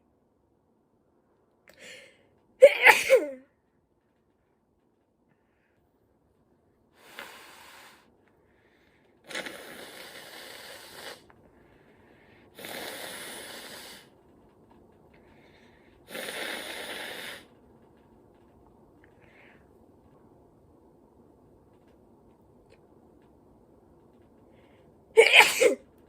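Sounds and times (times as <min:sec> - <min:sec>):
person breathing through nose: 0:07.0 - 0:14.1.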